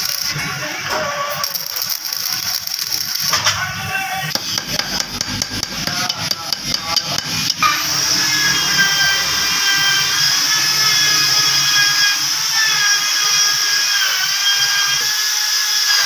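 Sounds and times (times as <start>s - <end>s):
power tool motor whining: 0.0s - 3.5s, 4.3s - 16.0s
metallic clicking and tapping: 4.4s - 7.6s.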